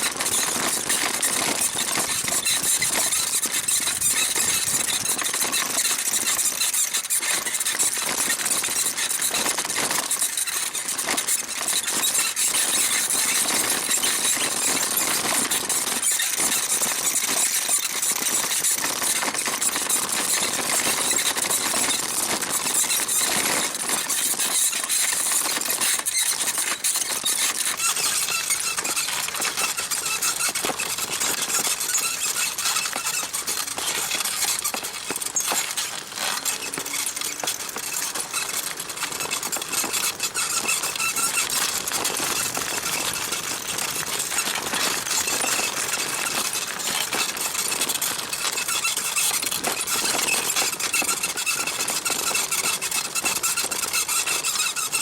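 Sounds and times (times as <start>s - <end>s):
bicycle saddle squeaking: 0.0s - 55.0s.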